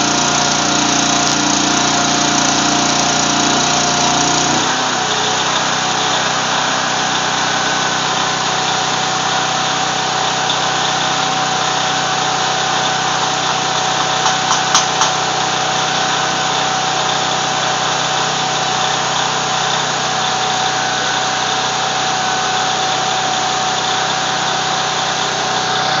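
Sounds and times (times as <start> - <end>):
machine hum: 0.0 - 16.7
sharp clicks: 13.4 - 15.2.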